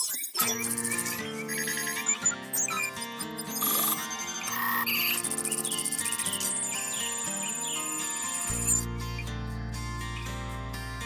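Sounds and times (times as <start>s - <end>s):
held pitched tones: 0.4s - 6.8s.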